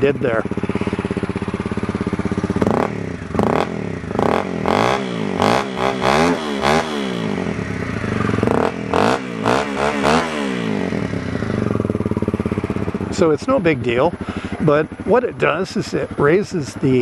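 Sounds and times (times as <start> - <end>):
muffled motorcycle engine revving: 0.0 - 17.0.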